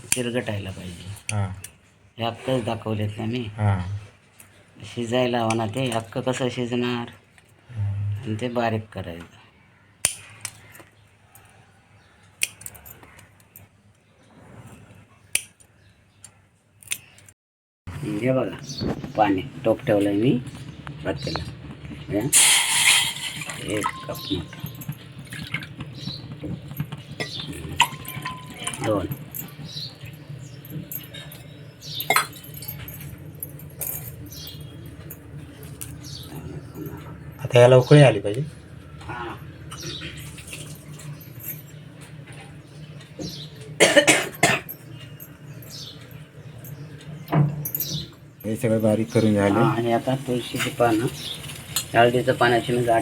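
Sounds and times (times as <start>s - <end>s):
kitchen utensils clinking: 22.3s - 37.5s, 43.3s - 53.0s.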